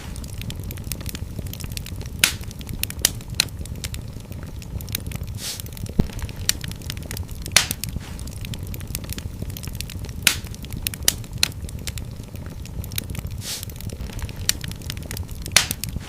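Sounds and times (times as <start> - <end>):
flames rumbling: 0.0 - 16.0
logs crackling and popping: 0.0 - 16.0
brief hiss: 5.4 - 5.6.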